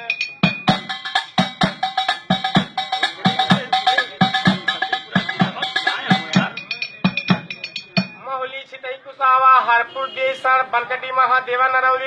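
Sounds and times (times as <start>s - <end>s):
drum quick steady beat: 0.0s - 8.2s
held melody line: 0.4s - 8.1s.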